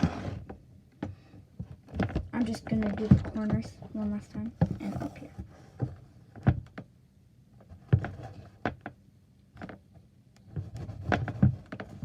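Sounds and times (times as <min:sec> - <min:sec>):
box knocks and bumps: 0:00.0 - 0:06.8, 0:10.5 - 0:12.0.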